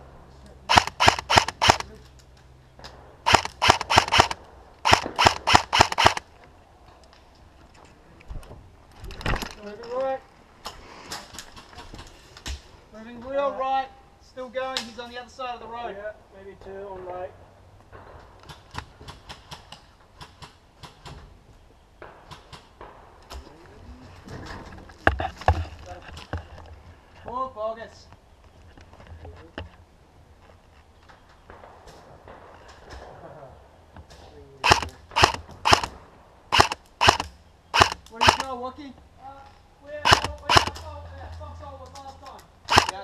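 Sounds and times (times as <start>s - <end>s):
airsoft rifle shots: 0.7s - 2.0s, 3.2s - 6.2s, 34.6s - 38.6s, 40.0s - 40.9s, 42.7s - 43.0s.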